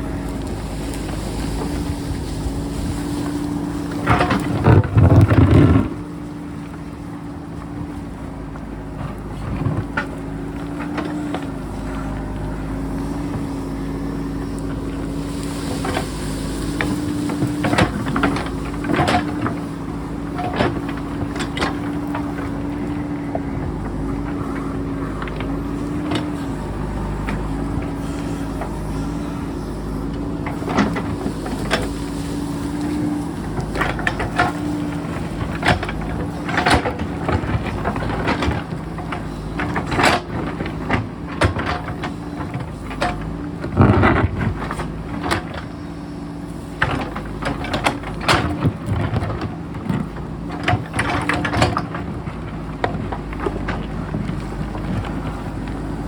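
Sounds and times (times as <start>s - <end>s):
backhoe diesel engine running: 0.0s - 56.0s
rock knocking and clattering: 4.0s - 6.1s.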